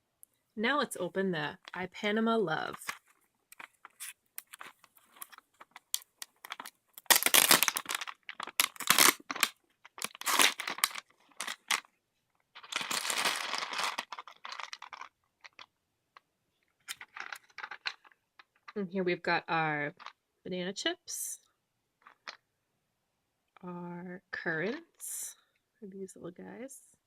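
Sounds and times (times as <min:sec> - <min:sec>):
small clicks and crackles: 0:02.8 - 0:18.8
snack packet tearing and rustling: 0:02.9 - 0:11.9, 0:12.6 - 0:15.7.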